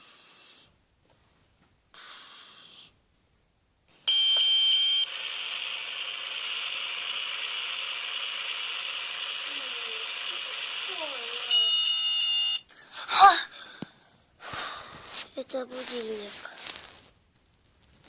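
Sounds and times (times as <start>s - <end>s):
alarm clock beeping: 4.1s - 12.7s.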